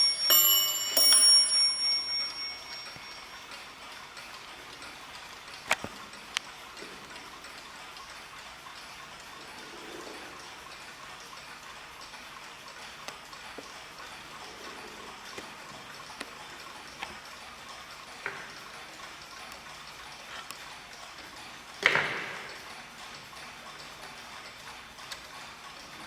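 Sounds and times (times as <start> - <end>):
loud clock strike ringing: 0.0 - 4.6
clocks ticking: 0.0 - 26.0.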